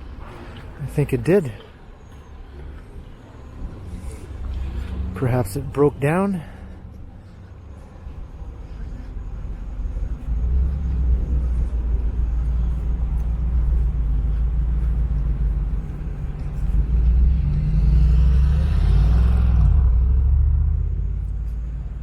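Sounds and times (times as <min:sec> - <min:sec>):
street traffic rumble: 0:00.0 - 0:22.0
vehicle engine passing close: 0:08.5 - 0:22.0.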